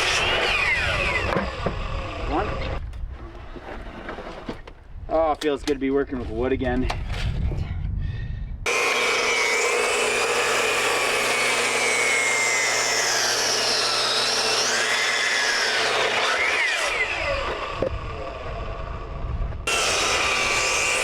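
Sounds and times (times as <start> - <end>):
electric saw cutting wood: 0.0 - 2.8, 8.7 - 21.0.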